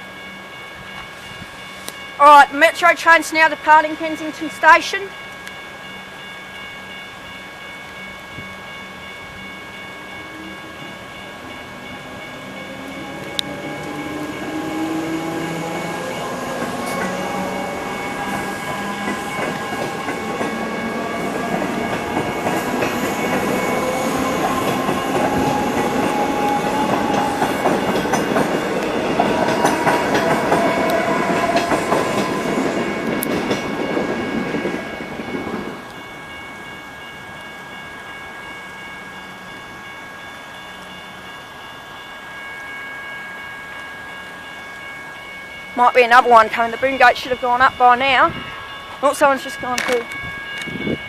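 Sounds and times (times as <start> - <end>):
level crossing bell ringing: 0.0 - 51.0
electric train motors whining: 9.7 - 45.8
wheels clicking over rail joints: 12.3 - 36.0.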